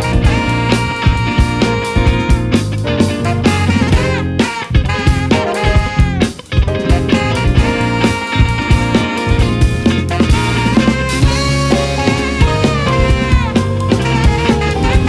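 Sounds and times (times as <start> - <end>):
live funk band: 0.0 - 15.0
pitch-bending lead line: 0.0 - 15.0
steady drum beat: 0.0 - 15.0.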